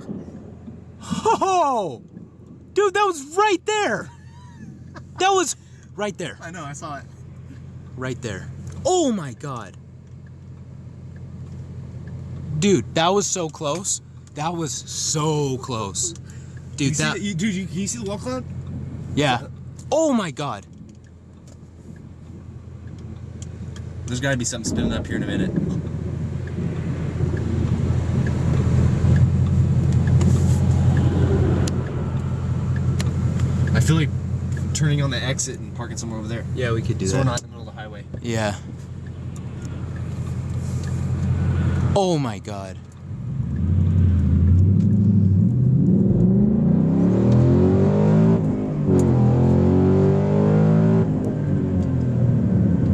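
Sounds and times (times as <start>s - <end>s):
road and engine rumble: 0.0s - 52.9s
faint ticking: 25.8s - 35.6s, 38.1s - 41.9s.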